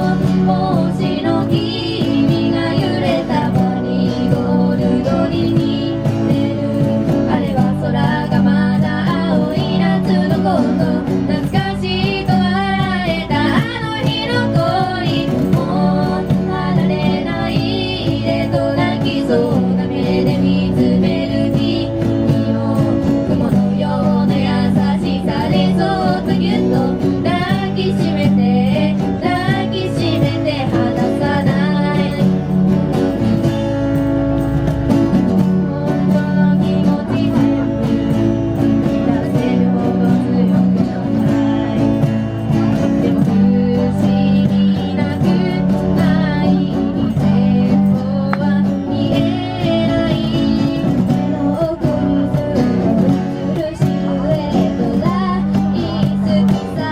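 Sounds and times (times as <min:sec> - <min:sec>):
guitar accompaniment: 0:00.0 - 0:56.9
person singing: 0:35.3 - 0:56.9.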